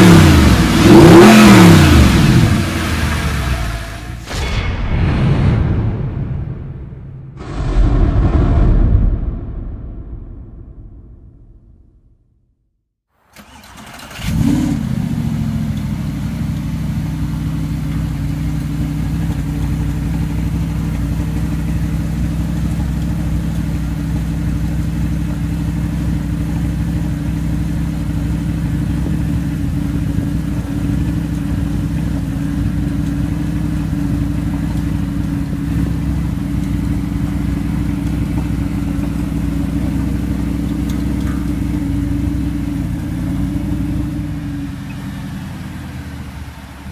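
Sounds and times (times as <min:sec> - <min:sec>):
car engine starting and idling: 0:00.0 - 0:04.4, 0:13.2 - 0:46.9
engine rev: 0:00.0 - 0:04.4, 0:13.4 - 0:16.4.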